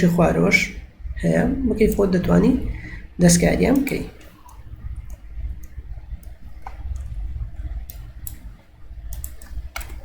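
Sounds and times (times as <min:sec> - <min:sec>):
steady low hum: 0:00.0 - 0:10.0
computer mouse clicking: 0:03.7 - 0:10.0.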